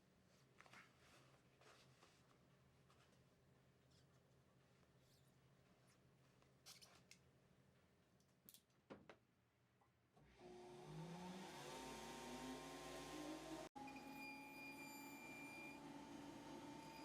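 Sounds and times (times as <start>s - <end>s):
electric motor whining up: 10.4s - 13.7s.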